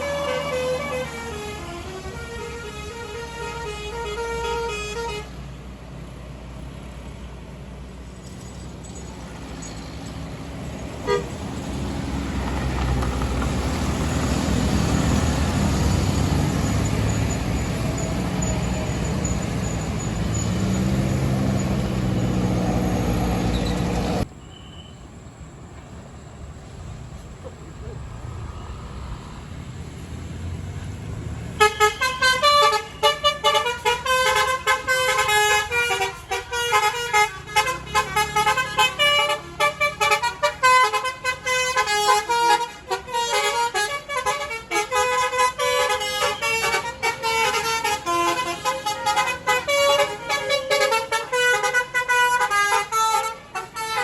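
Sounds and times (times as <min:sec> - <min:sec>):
musical bus horn tune: 0:00.0 - 0:05.4, 0:11.0 - 0:11.5, 0:31.6 - 0:54.0
bus engine passing: 0:00.0 - 0:24.4, 0:25.1 - 0:54.0.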